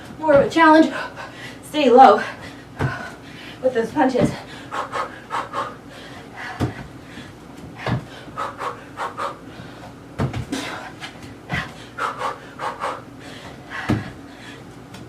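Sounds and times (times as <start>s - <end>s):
person panting hard: 0.8s - 3.6s, 4.3s - 14.7s
dull thumps on floor: 7.8s - 8.1s, 10.2s - 10.6s, 13.9s - 14.1s.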